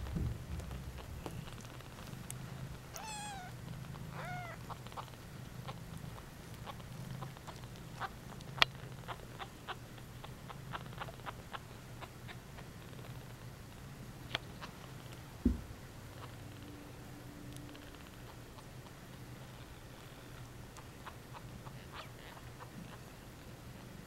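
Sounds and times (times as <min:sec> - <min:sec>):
small clicks and ticks: 0:00.0 - 0:03.0, 0:04.6 - 0:15.2
low steady hum: 0:00.0 - 0:24.0
kitten mewing: 0:02.9 - 0:05.1.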